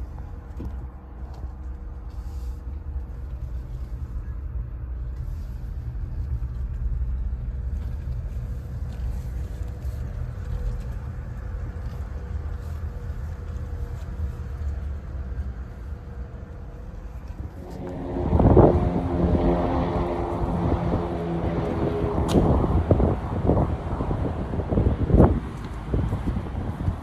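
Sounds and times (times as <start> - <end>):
faint steady hum: 0.0 - 27.0
road and drivetrain rumble: 0.0 - 27.0.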